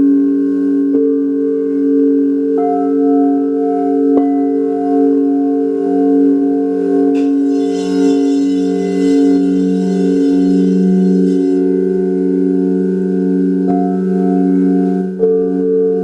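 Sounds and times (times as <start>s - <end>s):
singing bowls ringing: 0.0s - 16.0s
high shimmering sound: 7.1s - 12.2s.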